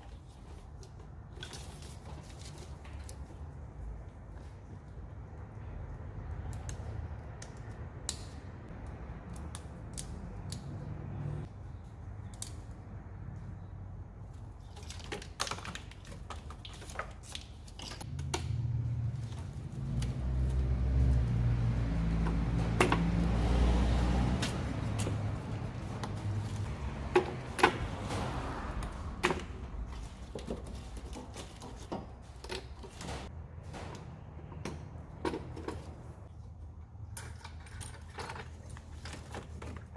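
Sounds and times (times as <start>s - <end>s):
electrical connectors clicking and snapping: 6.3s - 10.9s.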